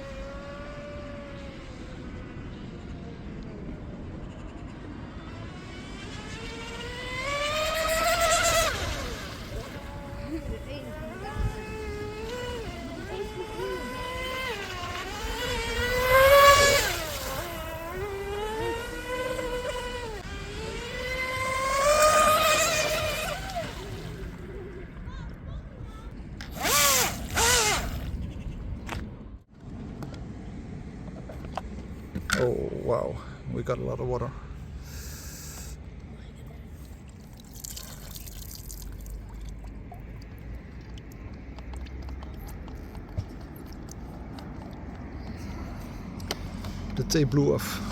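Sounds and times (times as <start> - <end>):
electric boat motor whine: 0.0 - 25.0, 26.4 - 28.2
low wind rumble: 0.0 - 35.2.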